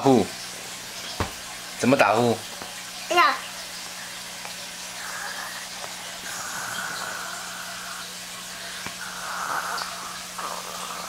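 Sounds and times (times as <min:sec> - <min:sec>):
child imitating snoring: 0:05.0 - 0:08.0, 0:09.0 - 0:11.0.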